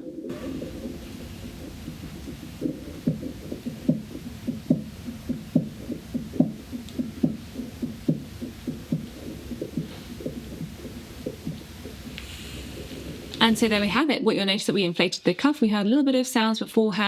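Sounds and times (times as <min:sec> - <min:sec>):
pulse thuds through stethoscope: 0:00.0 - 0:14.0.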